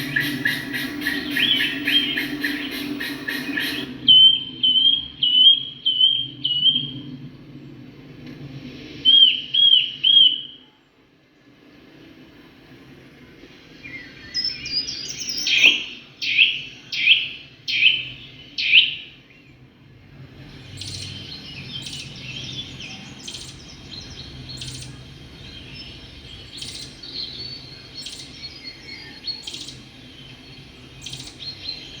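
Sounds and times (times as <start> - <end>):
loud falling whistled bird notes: 0.0 - 6.9, 13.9 - 19.0
birds chirping and twittering: 0.0 - 7.9, 13.8 - 32.0.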